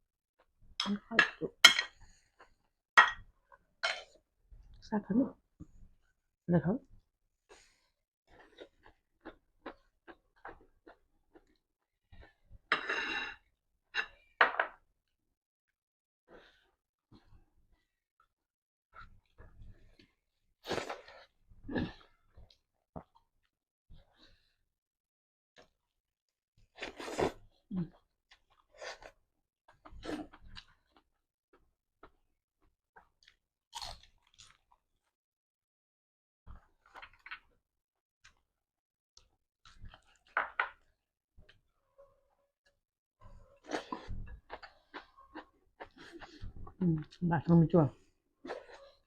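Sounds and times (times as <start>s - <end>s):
person chewing crunchy food: 33.0s - 35.1s, 39.2s - 40.4s, 43.6s - 46.7s
person eating: 33.2s - 34.8s, 43.6s - 47.2s.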